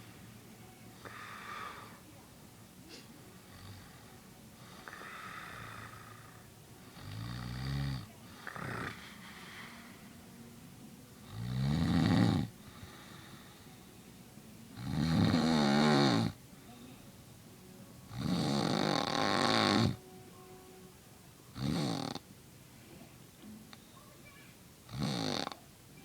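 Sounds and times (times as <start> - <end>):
soft breathing: 0.0 - 2.2, 2.8 - 6.5, 8.2 - 10.6, 12.6 - 14.2, 16.5 - 17.3
man snoring: 7.0 - 9.0, 11.2 - 13.2, 14.8 - 16.4, 18.1 - 20.0, 21.6 - 22.2, 24.9 - 25.6.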